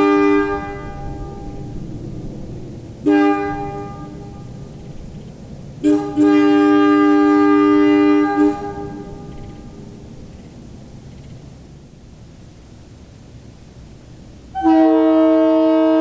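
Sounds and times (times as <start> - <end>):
two-note air train horn: 0.0 - 1.8, 3.0 - 4.8, 5.8 - 10.0, 14.5 - 16.0.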